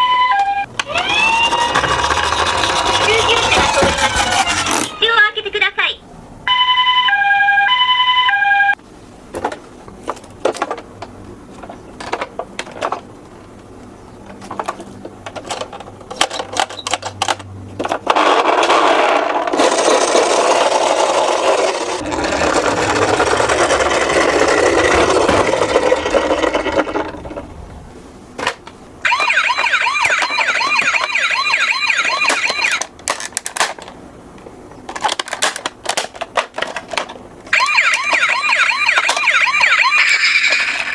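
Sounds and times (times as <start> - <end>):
toy electronic siren: 0.0 - 5.0, 29.0 - 32.9, 37.5 - 40.9
toy cars rattling as they roll: 0.8 - 5.0, 15.3 - 27.4, 34.9 - 38.1
plastic toy cars clattering: 0.9 - 5.0, 9.3 - 13.1, 14.4 - 27.5, 32.2 - 34.0, 34.8 - 37.3.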